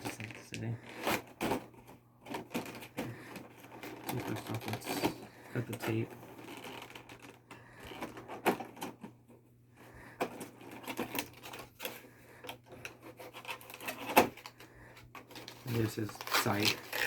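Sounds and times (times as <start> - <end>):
packaging handled: 0.0 - 9.0, 13.2 - 17.0.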